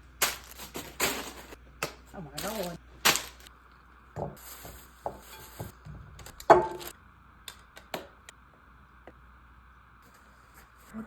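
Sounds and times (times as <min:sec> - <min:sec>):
kitchen items knocking and clinking: 0:00.2 - 0:03.5, 0:04.2 - 0:06.9.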